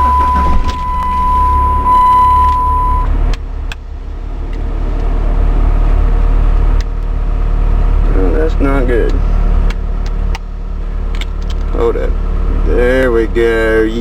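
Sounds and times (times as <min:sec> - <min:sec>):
steady high beep: 0:00.0 - 0:03.1
car engine running: 0:00.0 - 0:14.0.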